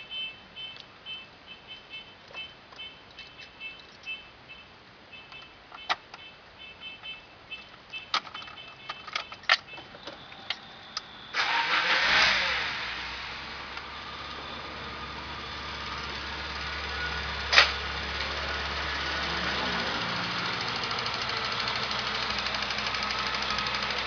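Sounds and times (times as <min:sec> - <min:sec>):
car engine starting and idling: 0:09.2 - 0:24.0.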